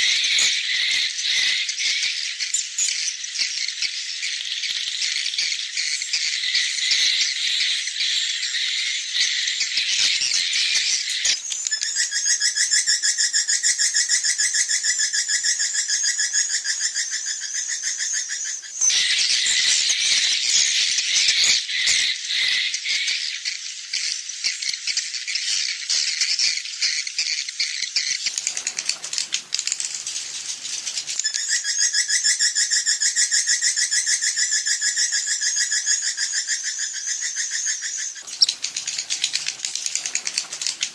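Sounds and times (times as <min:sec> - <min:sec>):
swiftlets chirping chorus: 0:18.1 - 0:40.9.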